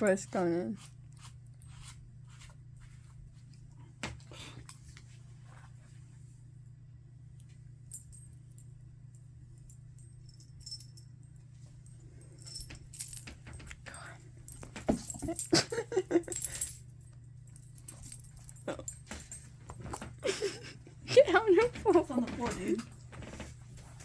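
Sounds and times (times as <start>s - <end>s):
metallic jingling and rustling: 9.6s - 24.0s.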